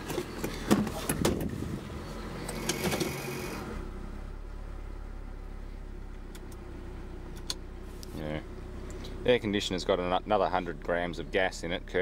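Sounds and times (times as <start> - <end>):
engine clicks and knocks: 0.0 - 1.6, 2.4 - 3.6
car engine idling irregularly: 0.0 - 12.0.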